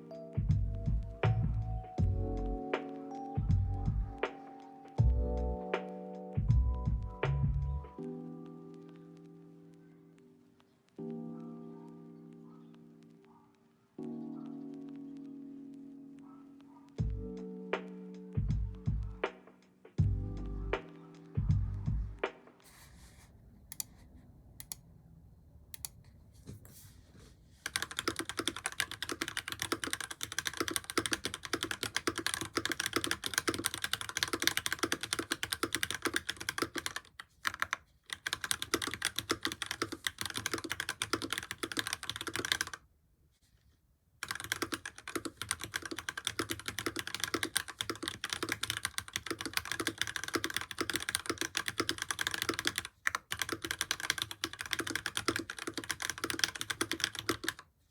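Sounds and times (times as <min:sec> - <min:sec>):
fast typing on mechanical keyboard: 0:27.6 - 0:42.8, 0:44.2 - 0:57.7.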